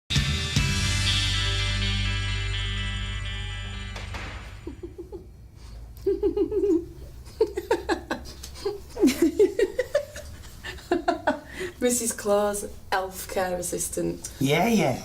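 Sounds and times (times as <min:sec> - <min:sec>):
music: 0:00.1 - 0:04.9
people giggling: 0:04.5 - 0:05.4, 0:06.0 - 0:11.8.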